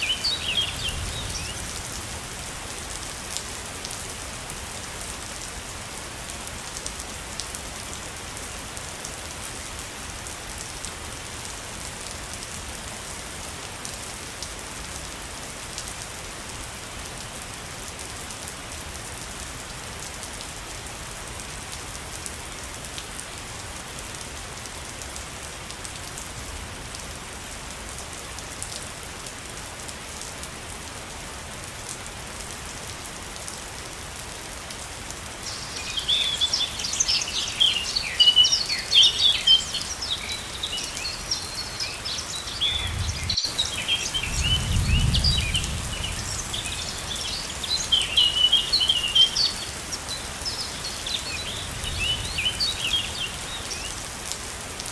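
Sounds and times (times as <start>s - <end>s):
small birds chirping rapidly: 0.0s - 1.9s, 35.4s - 54.1s
waterfall rushing: 35.4s - 44.5s, 45.4s - 54.2s.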